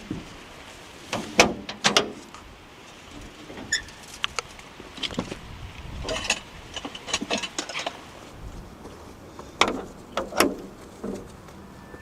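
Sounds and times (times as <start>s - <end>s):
handling clicks and knocks: 6.0s - 8.1s, 8.8s - 11.6s.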